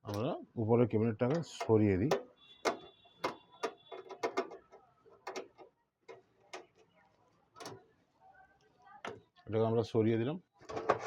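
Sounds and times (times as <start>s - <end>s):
sheet-metal panel clicks and knocks: 1.3s - 5.6s.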